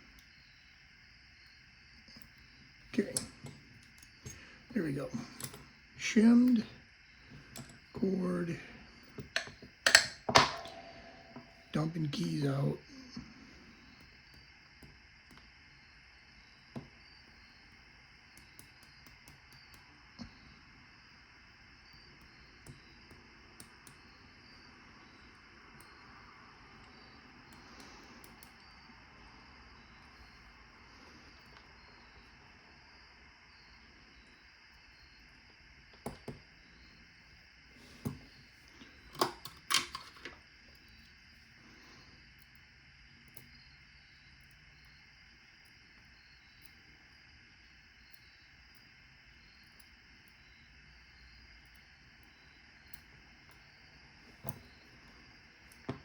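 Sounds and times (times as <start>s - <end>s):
padlock parts clicking: 9.2s - 11.5s, 39.1s - 40.4s.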